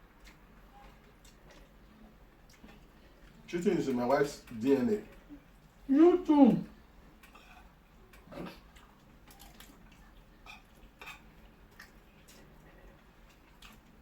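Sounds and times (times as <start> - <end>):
cutlery clinking on plates: 10.4 - 11.4.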